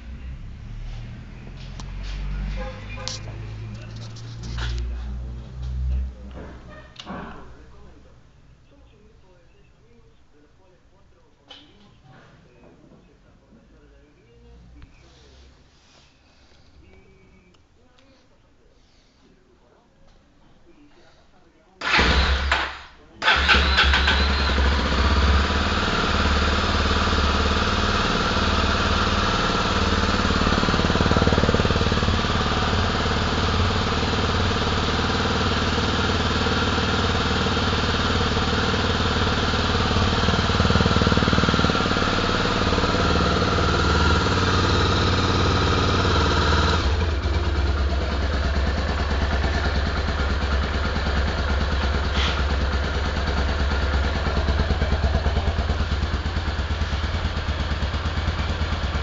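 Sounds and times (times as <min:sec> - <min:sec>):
motorcycle engine idling: 0:00.0 - 0:08.1, 0:21.8 - 0:59.0.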